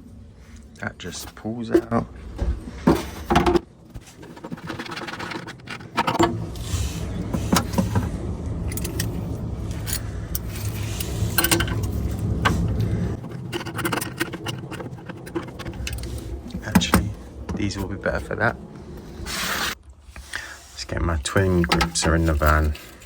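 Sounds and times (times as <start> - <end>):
steady low hum: 0.0 - 23.0
metal tools clinking and scraping: 2.8 - 18.4, 21.3 - 23.0.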